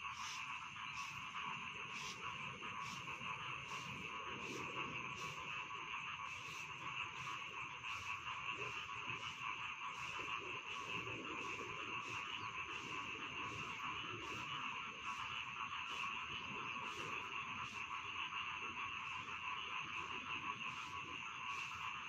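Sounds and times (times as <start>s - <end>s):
chorus of frogs calling: 0.0s - 22.0s.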